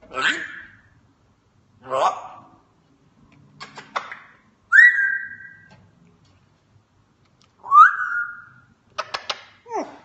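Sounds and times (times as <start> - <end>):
parrot whistling: 4.7 - 5.7, 7.6 - 8.7.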